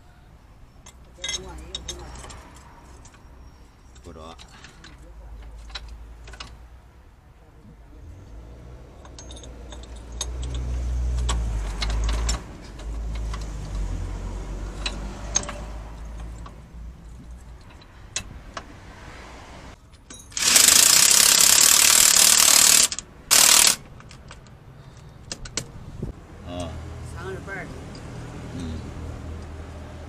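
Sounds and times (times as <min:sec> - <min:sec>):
hand tools clicking and ratcheting: 0:03.9 - 0:06.6, 0:09.0 - 0:18.7, 0:19.9 - 0:25.7.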